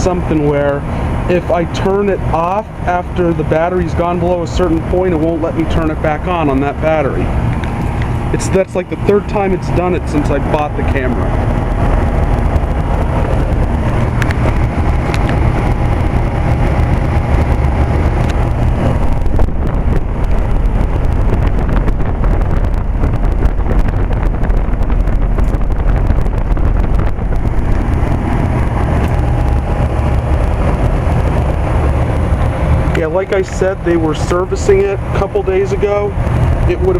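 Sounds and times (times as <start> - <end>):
air conditioner unit running: 0.0 - 36.9.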